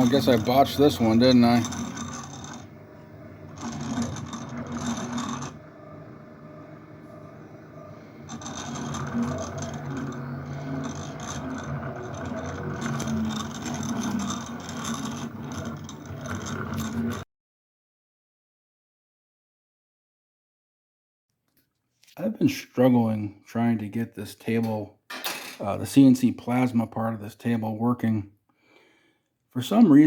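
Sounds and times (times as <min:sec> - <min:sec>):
stepper motors whirring hum: 0:00.0 - 0:17.2.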